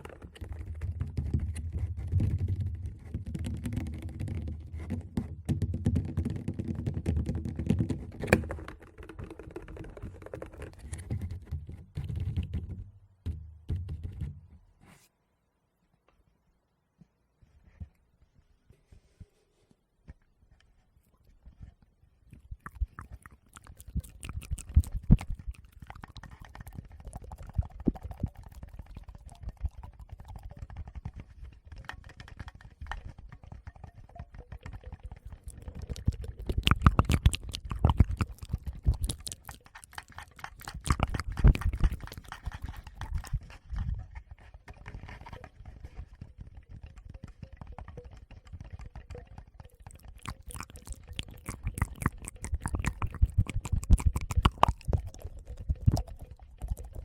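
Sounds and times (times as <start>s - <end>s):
wet mouth clicks: 22.2s - 31.3s, 33.1s - 43.8s, 46.8s - 57.0s
fingers rubbing microphones: 35.0s - 44.0s, 49.9s - 57.0s.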